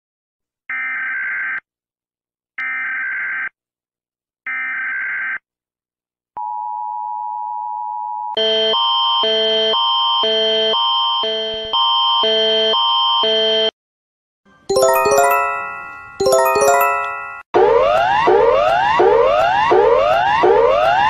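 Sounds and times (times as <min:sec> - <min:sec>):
alarm of stacked tones: 0:14.7 - 0:17.8.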